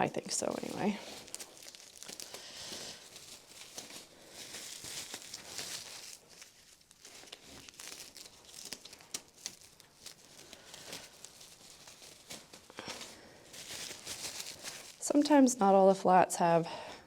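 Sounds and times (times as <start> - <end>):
plastic wrap crinkling: 0.0 - 15.6.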